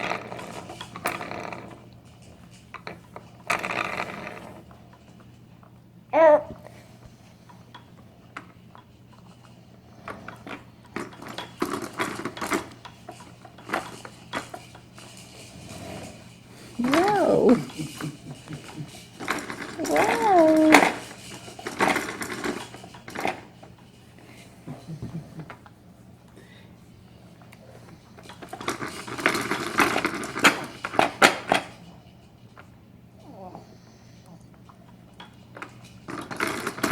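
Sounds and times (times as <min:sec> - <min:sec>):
plastic toy parts clicking and rattling: 0:16.8 - 0:17.8, 0:18.6 - 0:23.4.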